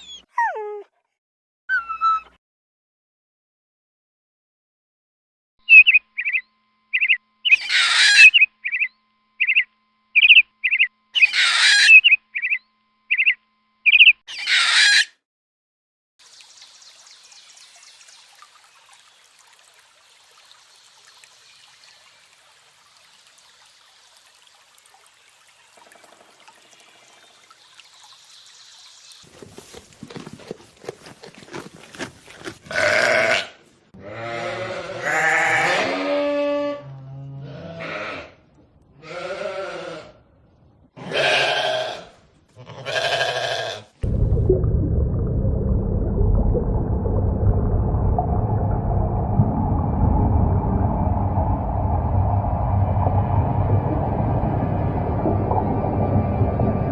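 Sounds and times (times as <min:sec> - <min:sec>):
bird chirping: 0:05.7 - 0:15.1
harsh bird calls: 0:05.7 - 0:15.1
loud animal call: 0:07.0 - 0:08.8, 0:11.2 - 0:12.6, 0:14.3 - 0:15.2, 0:32.7 - 0:38.4, 0:39.0 - 0:40.2, 0:41.0 - 0:43.9.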